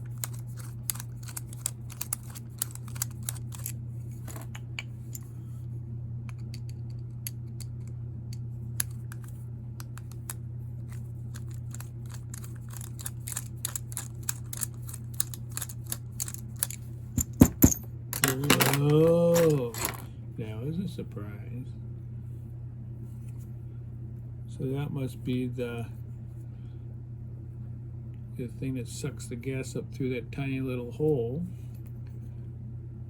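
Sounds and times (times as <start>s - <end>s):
low hum: 0.0s - 33.0s
metal tool clicking and scraping: 0.1s - 5.2s.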